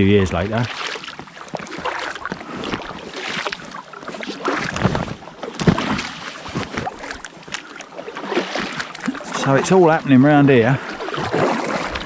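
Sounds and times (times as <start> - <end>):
kayak paddles splashing in water: 0.0 - 12.0.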